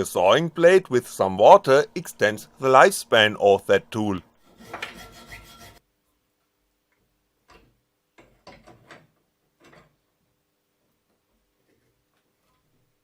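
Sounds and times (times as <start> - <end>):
hand saw cutting metal bar: 4.4 - 5.8.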